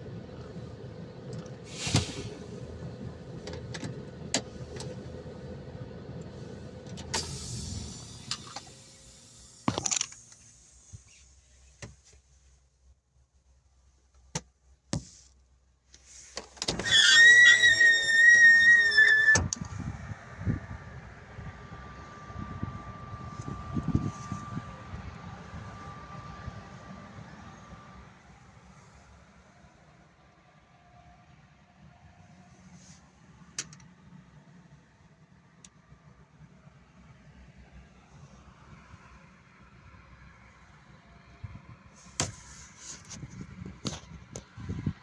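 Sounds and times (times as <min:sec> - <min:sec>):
truck engine rumble: 0:00.0 - 0:11.4, 0:16.1 - 0:30.0
loud high squeal: 0:16.8 - 0:19.6.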